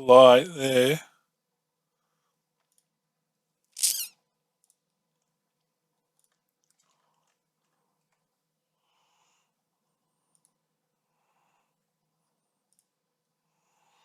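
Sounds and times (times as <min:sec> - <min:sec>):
faint breaths: 0:08.7 - 0:10.4, 0:11.0 - 0:12.0, 0:13.4 - 0:14.0.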